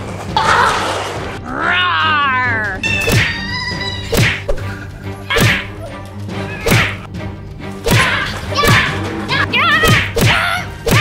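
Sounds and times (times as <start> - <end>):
whip-like whacks: 4.1 - 4.6, 6.6 - 7.1, 7.8 - 8.9, 9.8 - 11.0.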